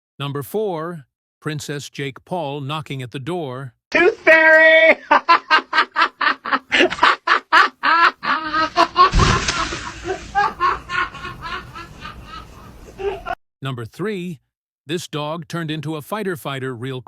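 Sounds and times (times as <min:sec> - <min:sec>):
high-pitched cackling: 0:05.0 - 0:13.4
brief rush of noise: 0:09.1 - 0:10.6.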